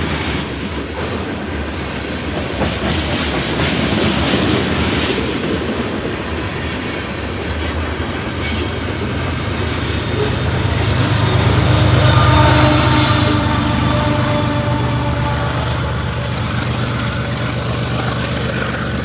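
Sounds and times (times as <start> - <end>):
freight train rolling past: 0.0 - 19.0
steel wheels clattering over rail joints: 0.0 - 19.0
high wheel squeal: 6.6 - 18.8.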